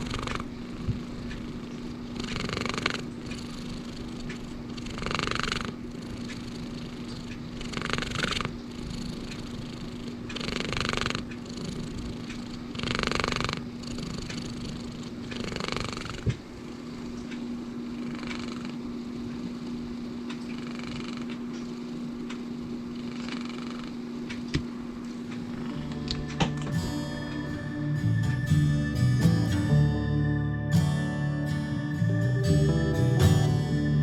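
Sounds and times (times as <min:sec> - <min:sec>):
cat purring: 0:00.0 - 0:17.2, 0:17.9 - 0:24.0
raspy snoring breath: 0:07.7 - 0:16.3.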